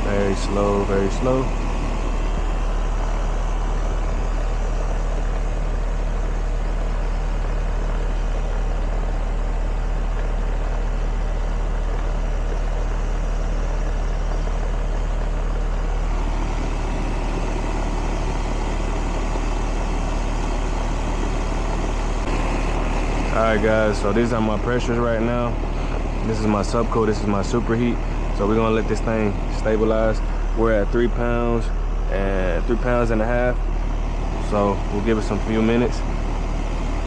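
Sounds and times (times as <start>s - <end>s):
air conditioner compressor humming: 0.0s - 37.0s
condenser fan running: 0.0s - 37.0s.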